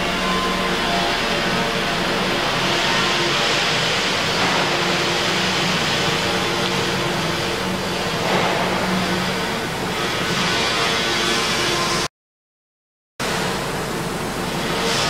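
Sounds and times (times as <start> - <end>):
low hum: 0.0 - 11.5.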